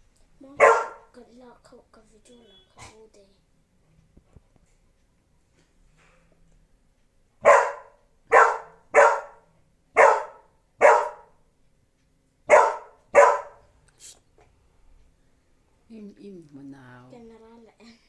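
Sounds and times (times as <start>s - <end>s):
dog barking: 0.5s - 1.2s, 7.4s - 11.4s, 12.5s - 13.7s.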